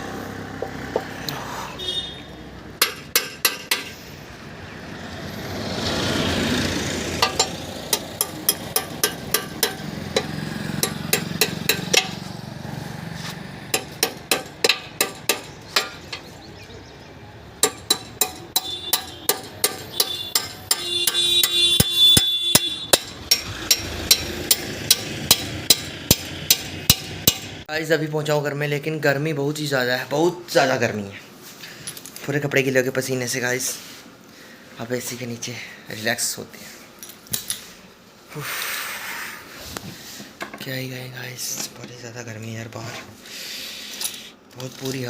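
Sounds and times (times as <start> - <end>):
hammer blows on metal: 17.6 - 27.5.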